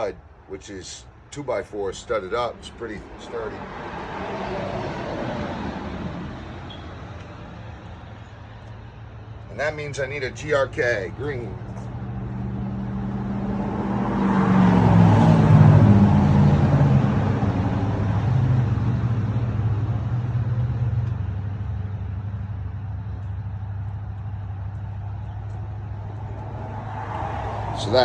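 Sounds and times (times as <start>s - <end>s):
vehicle engine driving off: 9.6s - 28.0s.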